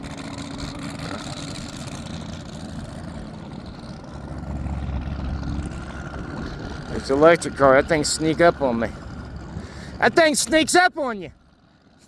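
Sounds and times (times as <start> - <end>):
low vehicle rumble: 0.0 - 12.0.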